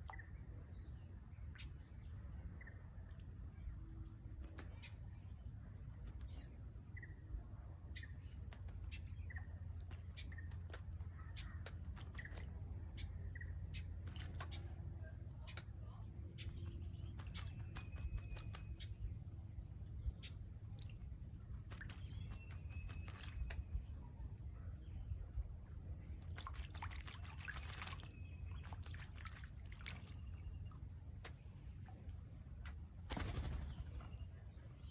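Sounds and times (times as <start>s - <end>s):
parrot splashing water: 26.2s - 32.8s.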